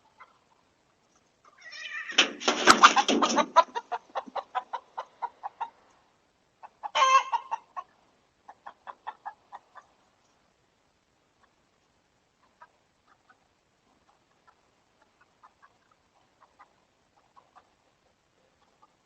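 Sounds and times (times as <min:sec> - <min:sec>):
hen clucking: 0:00.0 - 0:00.7, 0:01.5 - 0:10.4, 0:11.3 - 0:11.7, 0:12.3 - 0:19.0
hen squawking: 0:06.6 - 0:07.8.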